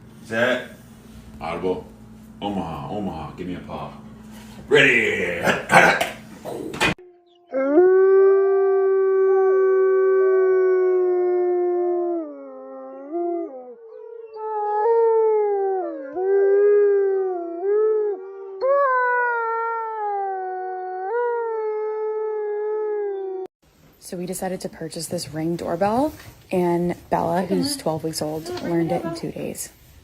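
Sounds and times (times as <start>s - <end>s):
dog howling: 7.3s - 23.5s.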